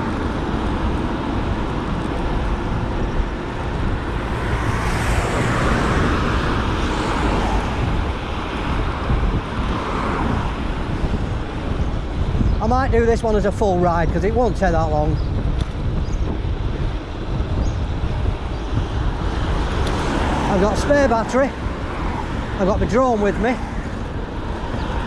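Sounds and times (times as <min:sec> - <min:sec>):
road traffic going by: 0:00.0 - 0:25.0
wind rushing over microphone: 0:00.0 - 0:25.0.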